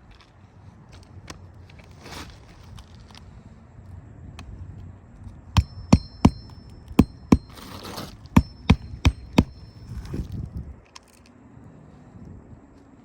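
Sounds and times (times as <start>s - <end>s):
rustle: 0.0s - 4.0s
hammer striking roofing nails: 5.6s - 9.8s.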